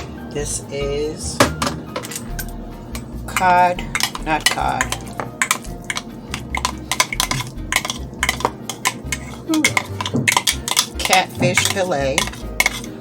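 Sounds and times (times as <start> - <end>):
metal spoon clinking in bowl: 3.3 - 13.0.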